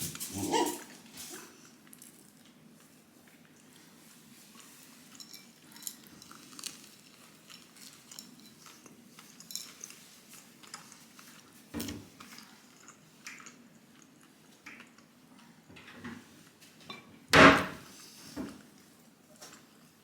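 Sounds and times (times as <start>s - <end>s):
chewing with wet clicks: 12.2s - 15.5s.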